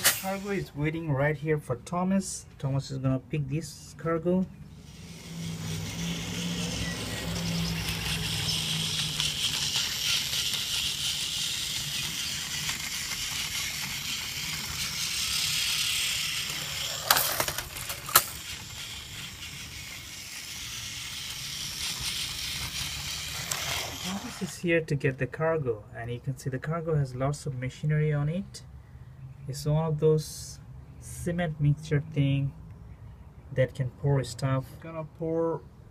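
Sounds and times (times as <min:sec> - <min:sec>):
toy train whirring rattle: 0:00.0 - 0:00.7, 0:04.7 - 0:24.6.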